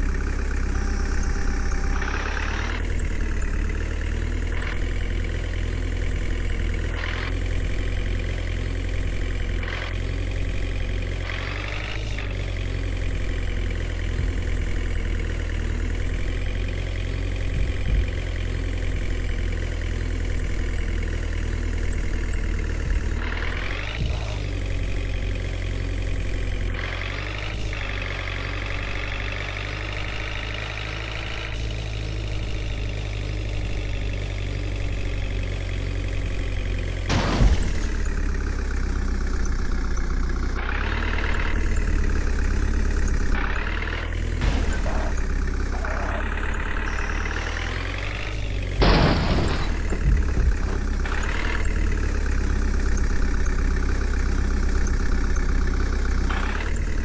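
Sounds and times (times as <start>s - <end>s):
diesel engine running: 0.0s - 57.0s
loud knocks: 48.8s - 51.1s.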